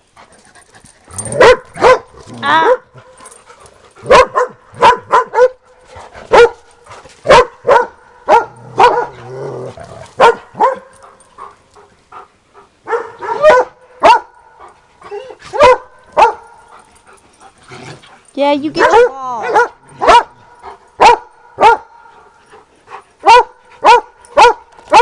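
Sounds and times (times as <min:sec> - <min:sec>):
dog barking: 0:01.4 - 0:02.1, 0:04.0 - 0:05.6, 0:06.3 - 0:06.6, 0:07.3 - 0:09.2, 0:10.2 - 0:10.9, 0:12.9 - 0:14.3, 0:15.5 - 0:16.5, 0:18.8 - 0:20.4, 0:21.0 - 0:22.0, 0:23.2 - 0:25.0.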